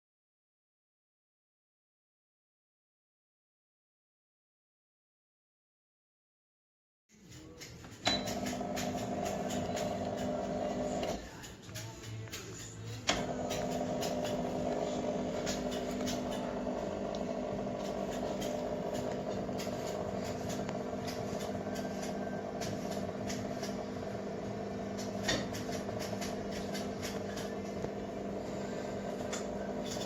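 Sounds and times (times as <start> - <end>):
espresso machine pump humming: 8.1 - 11.2, 13.1 - 30.0.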